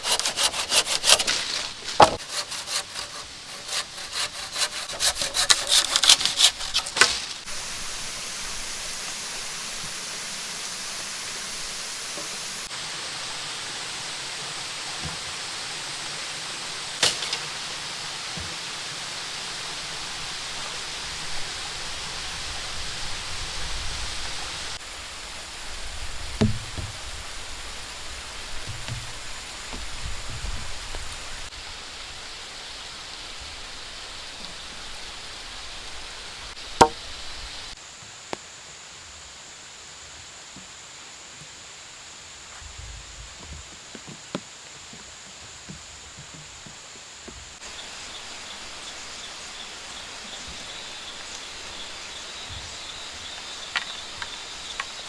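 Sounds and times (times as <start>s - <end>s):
sharp knocks: 36.8s - 37.0s.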